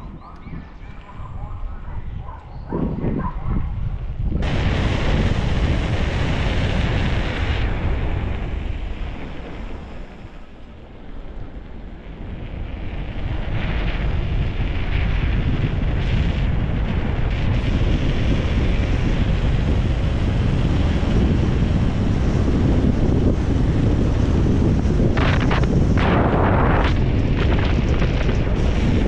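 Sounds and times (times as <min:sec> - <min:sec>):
wind buffeting microphone: 0:00.0 - 0:29.0
motorcycle running: 0:12.1 - 0:29.0.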